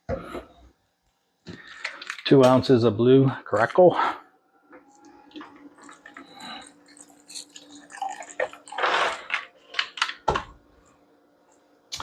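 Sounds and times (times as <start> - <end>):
liquid pouring into glass: 5.7 - 8.9.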